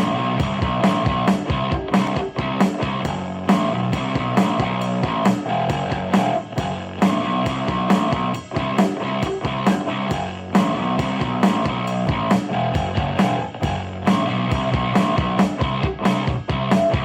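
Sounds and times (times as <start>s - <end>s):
rock music with guitar and drums: 0.0s - 17.0s.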